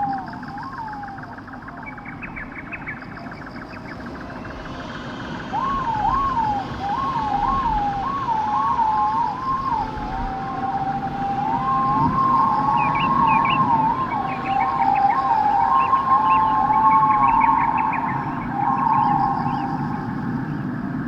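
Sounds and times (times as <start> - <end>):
siren wailing: 0.0 - 21.0.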